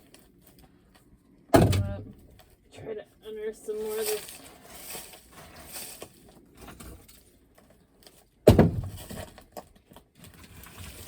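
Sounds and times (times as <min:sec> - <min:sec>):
shovel scraping coal: 0:03.7 - 0:07.3, 0:10.2 - 0:11.0.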